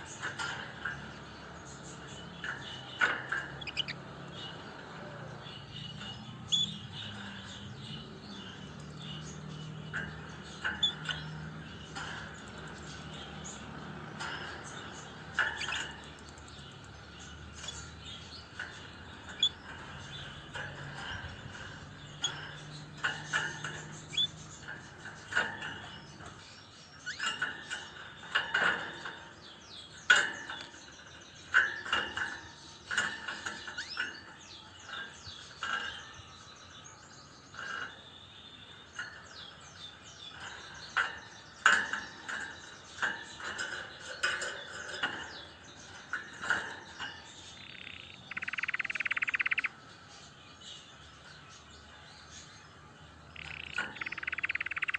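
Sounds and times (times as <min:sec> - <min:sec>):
canary chirping: 0:00.0 - 0:54.9.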